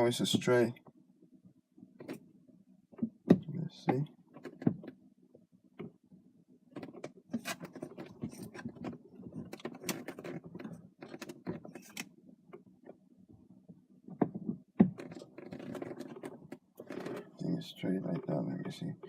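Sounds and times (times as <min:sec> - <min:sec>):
metal parts clicking and rattling: 0:15.0 - 0:17.3.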